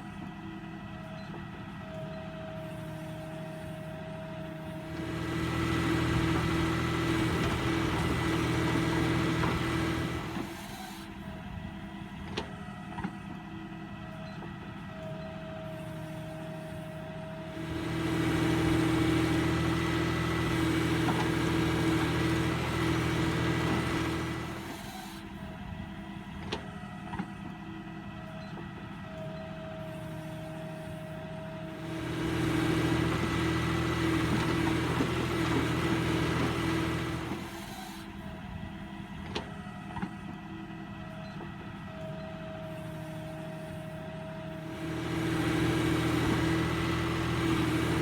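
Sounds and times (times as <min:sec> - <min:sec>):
diesel engine running: 0:04.6 - 0:12.3, 0:17.4 - 0:26.4, 0:31.6 - 0:39.9, 0:42.6 - 0:48.0.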